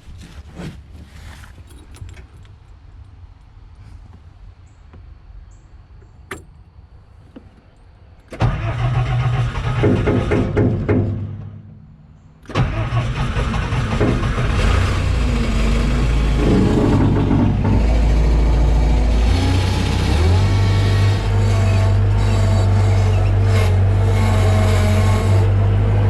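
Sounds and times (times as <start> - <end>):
skid steer engine running: 8.3 - 11.8, 12.4 - 26.0.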